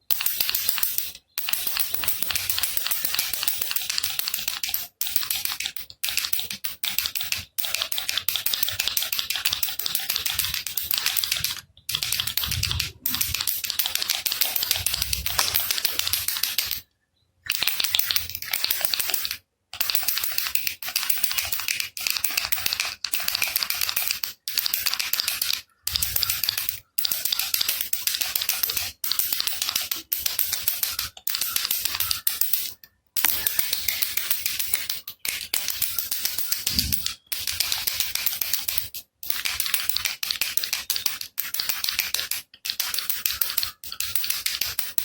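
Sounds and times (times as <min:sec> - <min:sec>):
baby rattle shaken: 0:08.4 - 0:16.8, 0:33.2 - 0:42.2.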